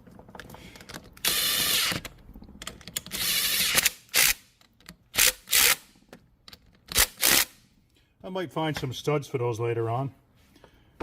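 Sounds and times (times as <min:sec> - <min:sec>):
metal mechanism ratcheting: 0:00.9 - 0:07.6.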